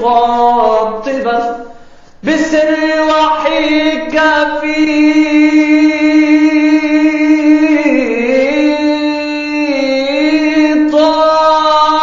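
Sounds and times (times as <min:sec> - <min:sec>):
man singing long melismatic note: 0:00.0 - 0:12.0.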